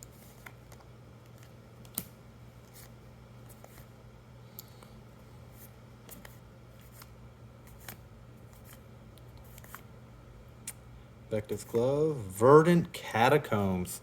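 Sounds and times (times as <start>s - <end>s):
trading cards flicked and rustled: 0.0s - 3.9s, 4.6s - 9.9s
low electrical hum: 0.0s - 14.0s.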